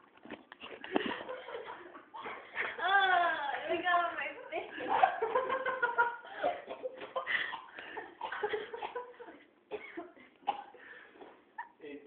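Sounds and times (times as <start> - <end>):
people laughing: 4.4 - 9.4
person coughing: 6.5 - 9.1.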